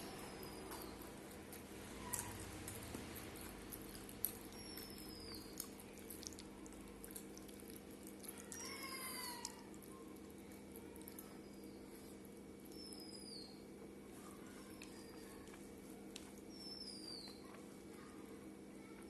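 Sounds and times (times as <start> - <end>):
eating clicks and smacks: 0.6 - 12.9
animal call: 8.4 - 9.7.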